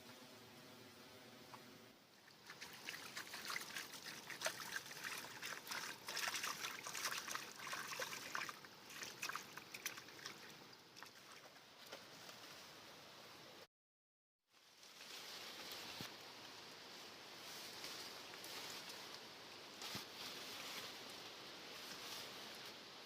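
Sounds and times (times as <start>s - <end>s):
water trickling and dripping: 2.1s - 11.6s.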